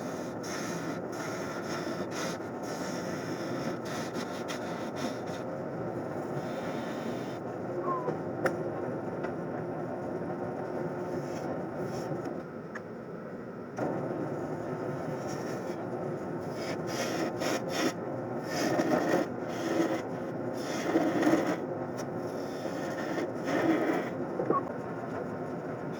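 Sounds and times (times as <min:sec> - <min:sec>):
lathe motor hum: 0:13.8 - 0:25.9
turning tool scraping wood: 0:16.5 - 0:24.7.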